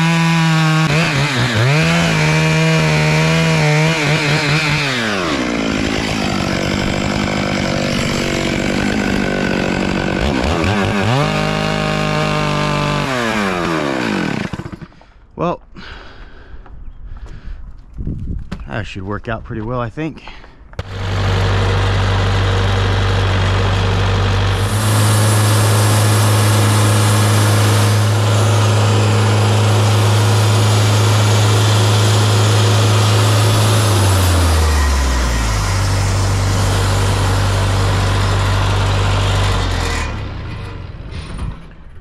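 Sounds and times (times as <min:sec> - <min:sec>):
sawmill engine running: 0:00.0 - 0:15.1, 0:20.7 - 0:41.4
band saw cutting log hiss: 0:24.5 - 0:37.4.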